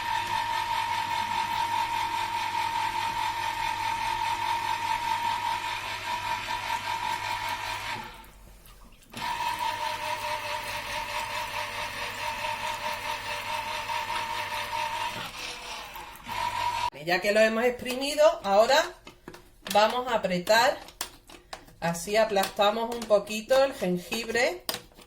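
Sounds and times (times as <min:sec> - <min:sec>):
electric juicer motor running: 0:00.0 - 0:08.3, 0:09.1 - 0:16.9.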